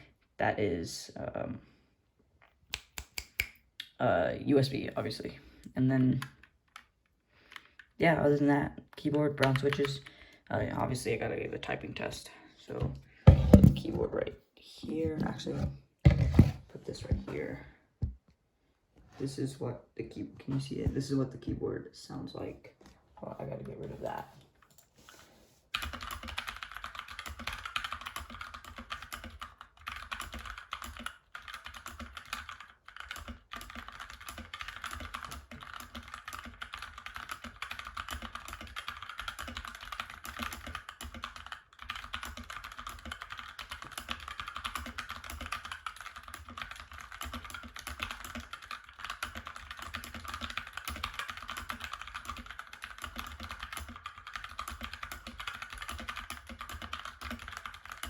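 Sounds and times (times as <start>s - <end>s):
fast typing on mechanical keyboard: 9.0s - 10.1s, 25.7s - 58.0s.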